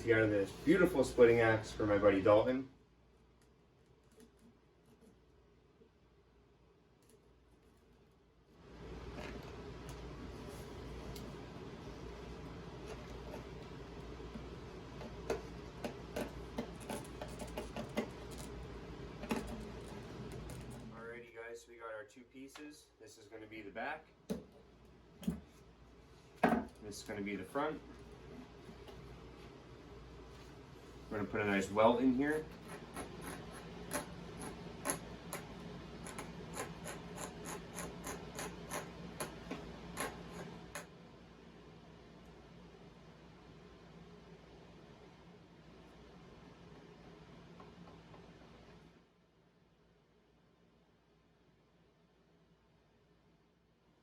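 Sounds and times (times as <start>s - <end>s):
low steady hum: 0.0s - 54.0s
light sharp ticks with rubbing: 32.4s - 39.4s
small objects clicking on workbench: 32.7s - 40.9s.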